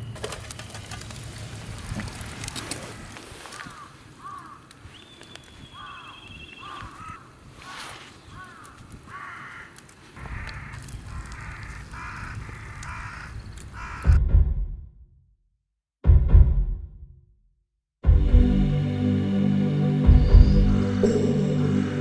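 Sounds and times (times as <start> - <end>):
birds calling: 0.0 - 14.2, 20.0 - 22.0
low rumble: 18.0 - 22.0.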